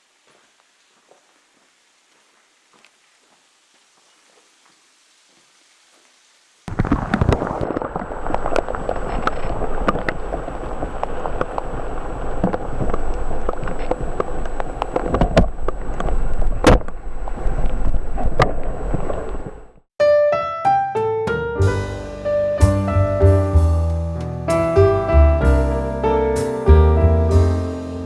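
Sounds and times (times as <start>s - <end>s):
waterfall roaring: 6.7s - 19.7s
piano music: 20.0s - 28.0s.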